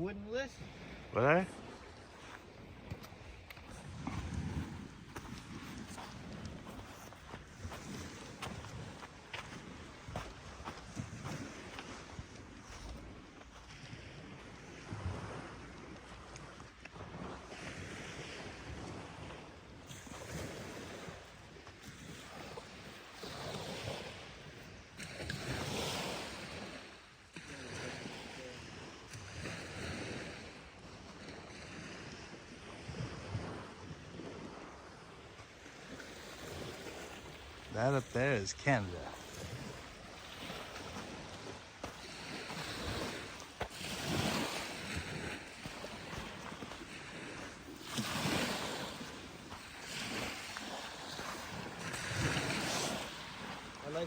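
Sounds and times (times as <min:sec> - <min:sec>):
small waves washing onto beach: 0:00.0 - 0:54.0
wind on microphone: 0:00.6 - 0:21.2, 0:28.7 - 0:38.2.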